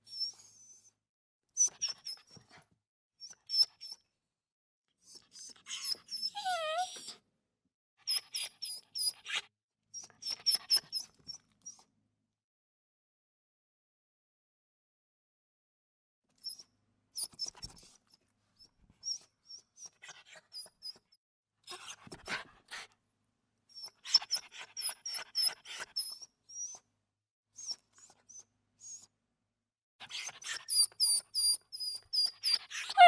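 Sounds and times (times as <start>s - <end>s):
small dog whimpering: 0.0s - 1.0s, 5.1s - 7.2s, 19.0s - 21.0s, 23.8s - 26.8s, 30.0s - 33.0s.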